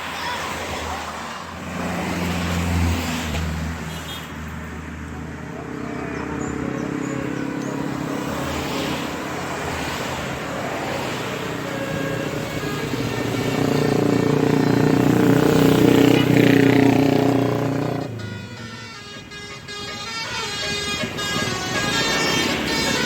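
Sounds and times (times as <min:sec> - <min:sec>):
bus engine hum driving past: 0:06.1 - 0:23.0.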